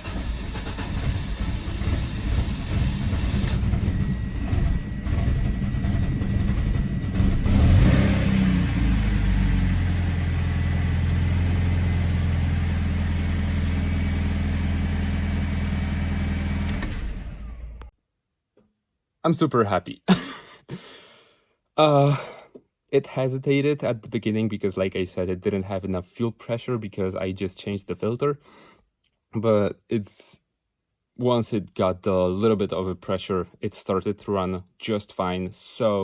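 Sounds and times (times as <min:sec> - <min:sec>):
car engine running unevenly then idling: 0:00.0 - 0:17.9.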